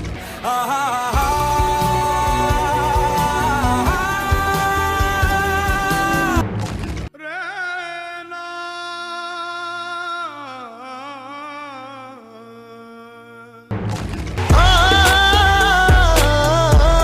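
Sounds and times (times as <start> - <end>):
person singing long held notes: 0.4 - 6.4, 7.2 - 13.7, 14.5 - 17.0.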